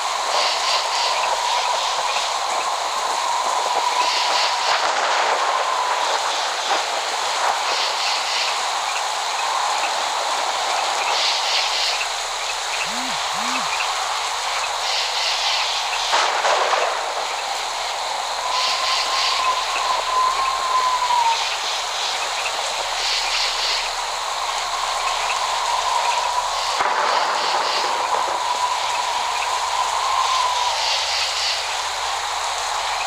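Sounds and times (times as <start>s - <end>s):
rain hiss: 0.0s - 33.0s
short low calls: 12.8s - 14.0s.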